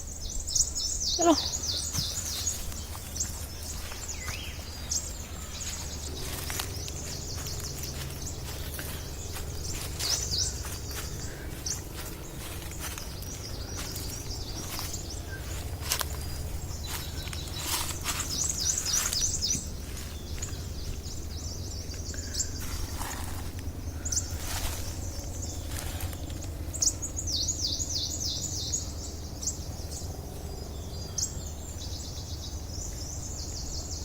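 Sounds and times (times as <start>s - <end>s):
low rumble: 0.0s - 31.7s
small birds chirping: 0.0s - 34.0s.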